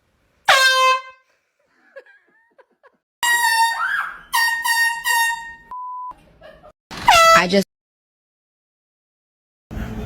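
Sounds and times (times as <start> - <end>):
air horn blasts: 0.5 - 1.3, 3.2 - 5.7, 7.1 - 7.5.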